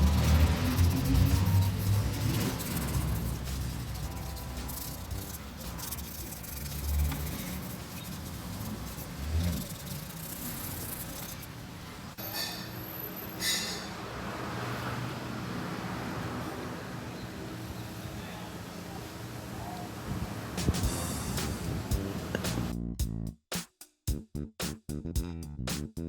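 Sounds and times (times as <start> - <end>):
car engine running: 0.0 - 11.5
hissing bursts: 0.0 - 12.1, 20.5 - 22.7.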